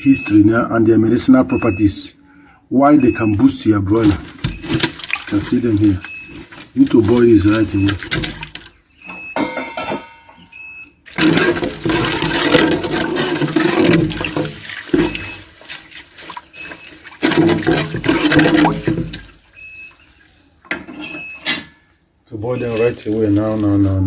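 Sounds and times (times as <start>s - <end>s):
water rushing and splashing: 3.9s - 8.2s, 11.2s - 19.5s.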